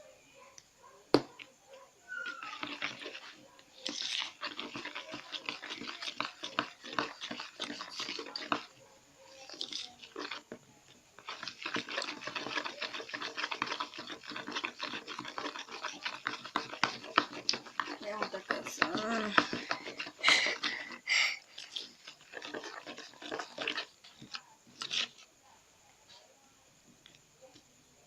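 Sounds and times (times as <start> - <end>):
spoon stirring sticky slime: 0.5 - 25.3.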